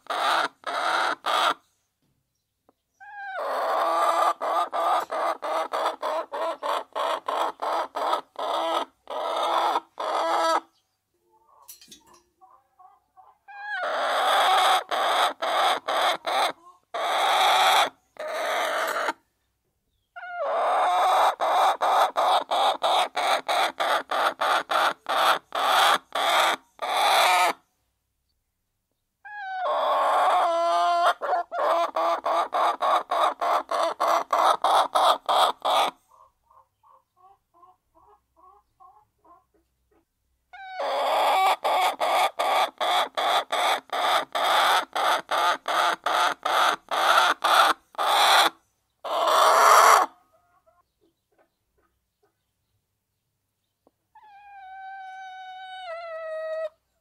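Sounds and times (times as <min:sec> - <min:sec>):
hens clucking: 0:00.0 - 0:01.6, 0:03.0 - 0:19.2, 0:20.2 - 0:27.6, 0:29.3 - 0:52.5, 0:53.8 - 0:56.8.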